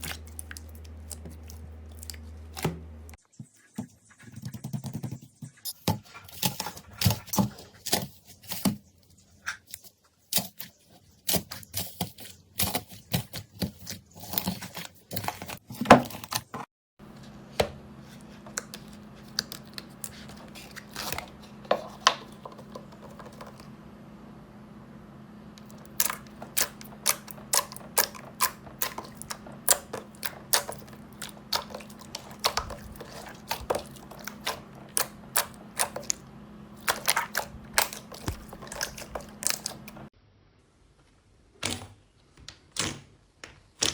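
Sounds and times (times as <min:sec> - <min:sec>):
steady low hum: 0:17.0 - 0:40.1
slime squished by hand: 0:25.6 - 0:40.1.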